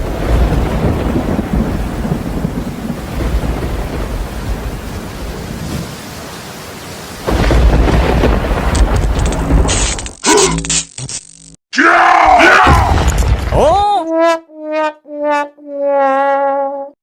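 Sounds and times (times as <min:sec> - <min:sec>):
rumbling thunder: 0:00.0 - 0:06.0, 0:07.2 - 0:09.8
rain falling: 0:00.0 - 0:10.3.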